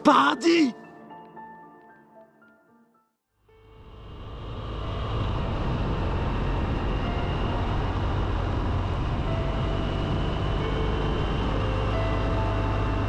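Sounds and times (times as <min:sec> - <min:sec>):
wind and road noise: 0:03.8 - 0:13.0
motorcycle engine rumble: 0:04.0 - 0:13.0.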